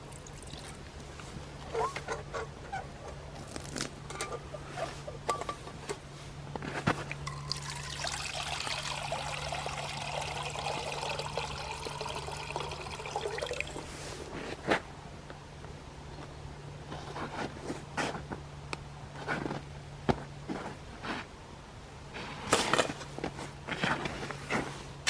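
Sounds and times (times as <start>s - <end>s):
liquid pouring into a container: 0.0s - 0.8s, 7.2s - 14.0s.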